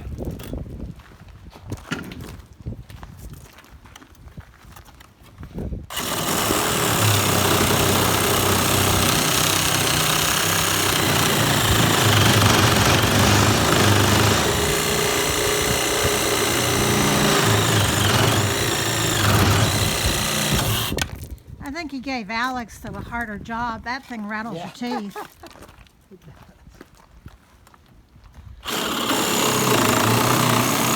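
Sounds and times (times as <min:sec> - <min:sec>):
power saw cutting wood: 0:05.9 - 0:21.1, 0:28.6 - 0:30.9.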